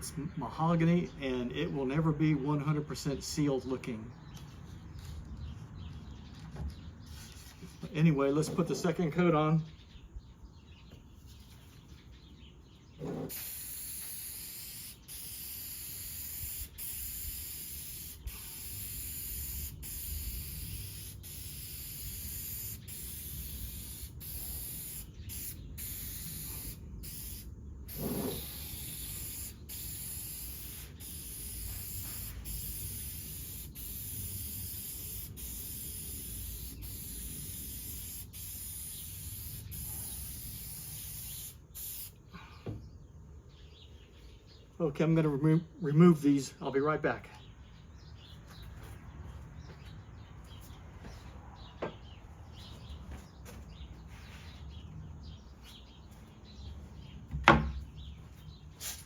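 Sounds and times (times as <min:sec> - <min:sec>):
aerosol spray can hissing: 0:13.1 - 0:42.2.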